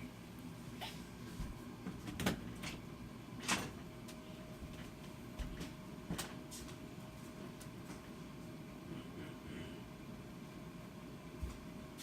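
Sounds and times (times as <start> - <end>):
low room noise: 0.0 - 12.0.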